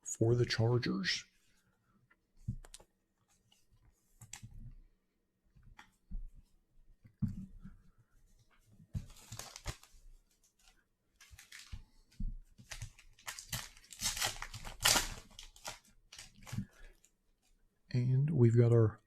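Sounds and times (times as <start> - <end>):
foil wrapper tearing and crinkling: 9.1 - 9.9, 11.2 - 11.7, 12.7 - 16.6.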